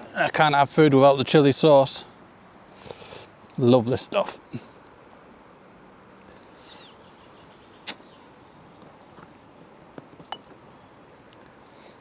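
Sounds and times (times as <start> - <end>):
small bird singing: 2.0 - 3.1, 4.0 - 12.0.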